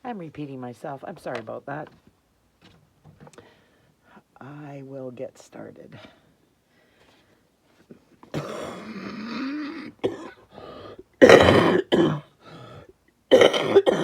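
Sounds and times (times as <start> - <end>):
woman clearing throat: 8.3 - 10.4, 11.2 - 12.3, 13.3 - 14.0
woman coughing: 8.3 - 10.4, 11.2 - 12.3, 13.3 - 14.0.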